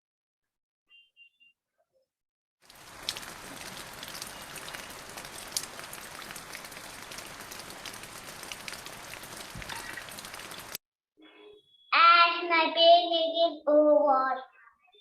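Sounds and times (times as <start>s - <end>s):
raindrop taps: 2.7s - 10.8s
steady rain hissing: 2.7s - 10.8s.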